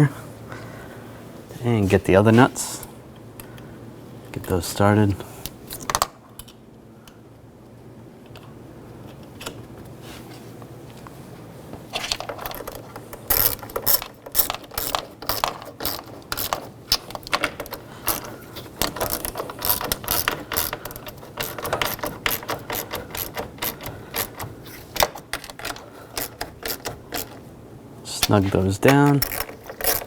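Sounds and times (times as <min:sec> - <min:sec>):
hand ratchet clicking rapidly: 0:13.3 - 0:27.4, 0:29.0 - 0:30.0.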